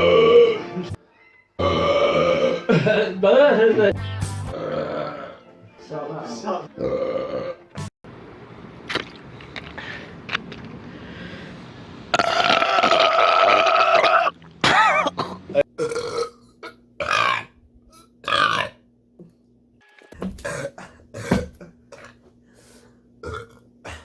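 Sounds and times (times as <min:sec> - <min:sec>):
human burps: 0:01.6 - 0:03.1, 0:04.5 - 0:05.4, 0:06.8 - 0:07.6, 0:12.2 - 0:18.8, 0:20.2 - 0:22.2, 0:23.2 - 0:24.0.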